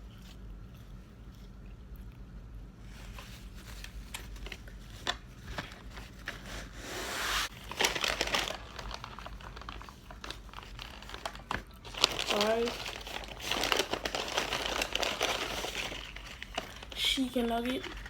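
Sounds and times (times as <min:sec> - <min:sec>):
paper bag and wrappers crinkling: 0:07.4 - 0:18.0.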